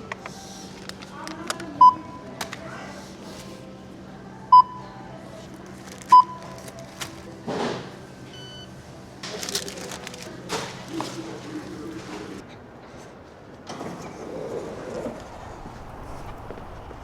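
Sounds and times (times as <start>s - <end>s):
rustling and handling noises: 0.0s - 1.8s, 2.4s - 3.7s, 5.3s - 8.6s, 9.2s - 12.4s
steady background hum: 0.0s - 17.0s
barcode scanner beeps: 6.1s - 6.9s, 8.3s - 8.8s.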